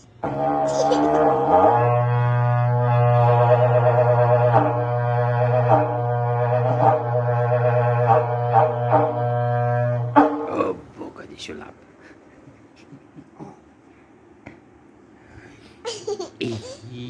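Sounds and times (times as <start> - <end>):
cattle horn long low note: 0.2 - 10.5.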